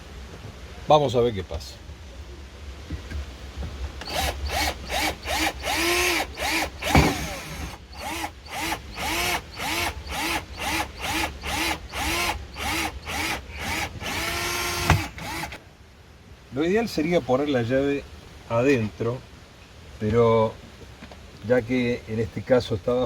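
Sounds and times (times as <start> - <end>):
power drill whirring: 4.0 - 15.6.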